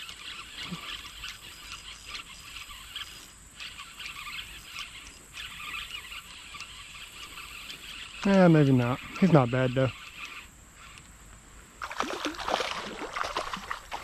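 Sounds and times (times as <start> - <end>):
insects chirring: 0.0 - 14.0.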